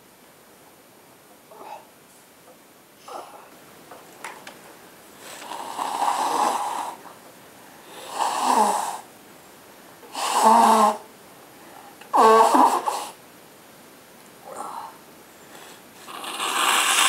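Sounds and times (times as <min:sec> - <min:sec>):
person blowing nose: 0:10.1 - 0:11.0, 0:16.0 - 0:17.0.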